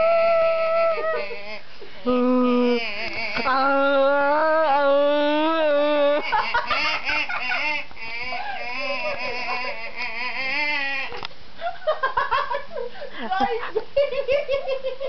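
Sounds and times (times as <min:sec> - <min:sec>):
person making silly vocal noises: 0:00.0 - 0:06.5.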